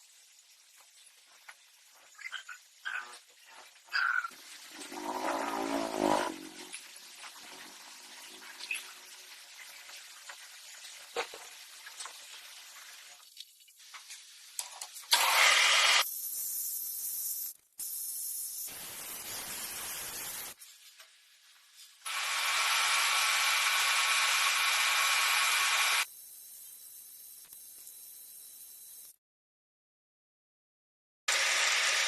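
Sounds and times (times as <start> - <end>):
hissing noise: 16.1 - 20.6.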